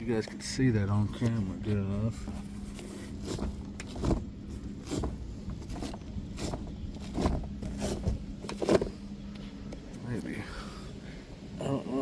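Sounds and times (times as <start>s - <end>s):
steady low hum: 0.0s - 12.0s
knocks and rustles: 2.1s - 9.9s.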